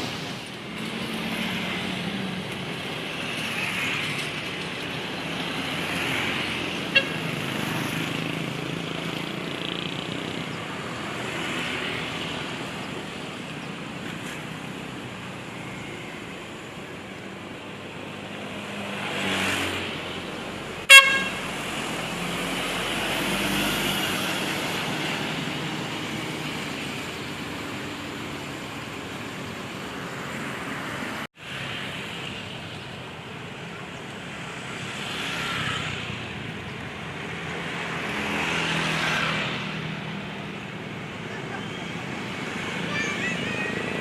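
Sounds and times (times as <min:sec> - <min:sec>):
vehicles passing: 0:00.0 - 0:44.0
short horn toot: 0:20.9 - 0:21.4.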